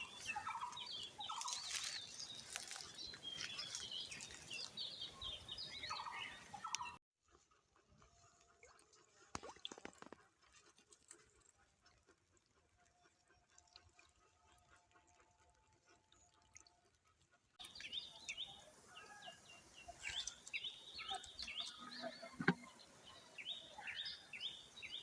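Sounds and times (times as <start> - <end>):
birds chirping: 0.0 - 7.0, 17.6 - 25.0
busy outdoor background: 17.6 - 25.0.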